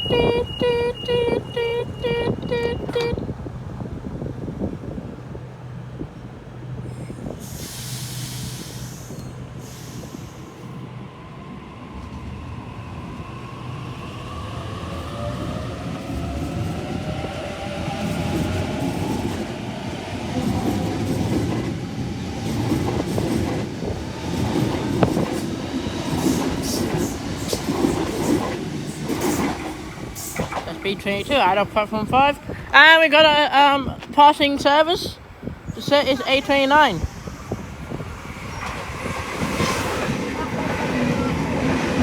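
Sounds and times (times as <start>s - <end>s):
train wheels clattering over rails: 20.3s - 30.9s.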